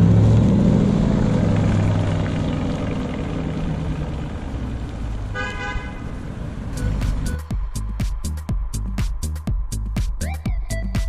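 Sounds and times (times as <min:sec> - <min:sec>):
car engine running: 0:00.0 - 0:10.1
car horn toot: 0:05.3 - 0:06.2, 0:06.8 - 0:07.4.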